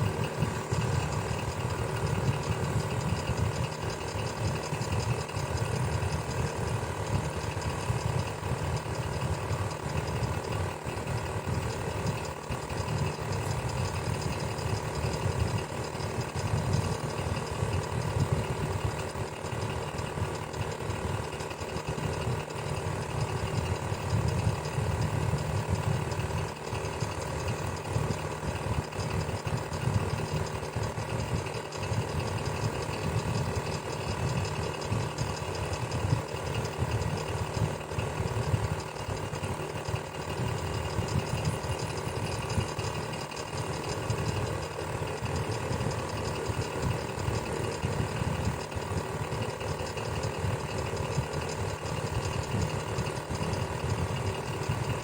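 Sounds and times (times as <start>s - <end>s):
electric fan motor hum: 0.0s - 55.0s.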